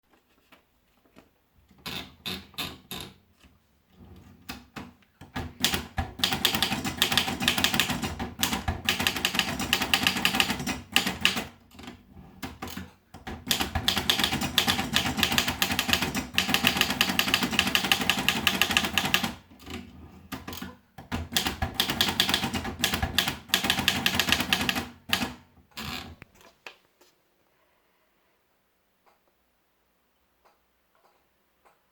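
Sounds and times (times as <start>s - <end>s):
manual typewriter key strikes: 12.6s - 19.4s, 20.4s - 25.4s.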